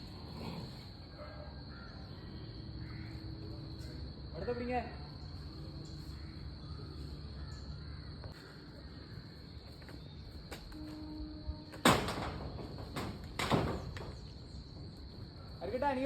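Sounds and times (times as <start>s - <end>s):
crow cawing: 1.7s - 3.4s.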